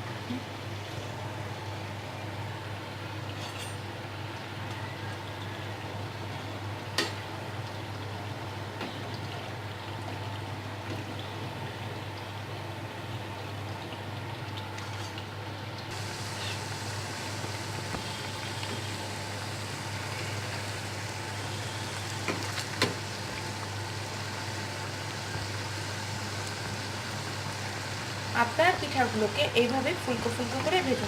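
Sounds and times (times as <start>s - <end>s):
food sizzling in hot oil: 14.0s - 31.0s.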